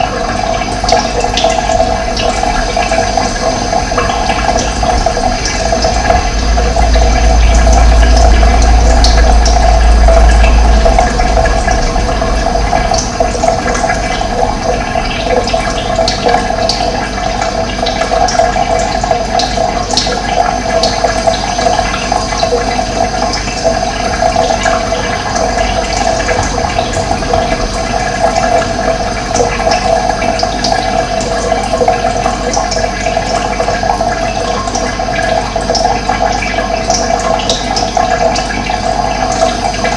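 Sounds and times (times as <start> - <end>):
running water: 0.0 - 39.9
deep low rumble: 1.9 - 16.6, 24.5 - 30.5.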